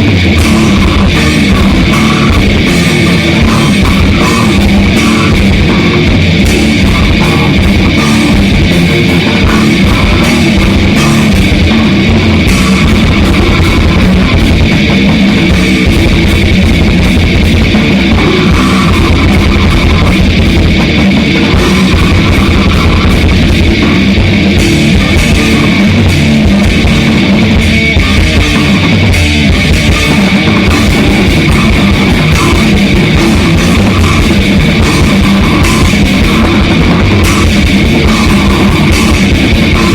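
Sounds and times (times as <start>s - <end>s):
grindcore band playing: 0.0s - 39.9s.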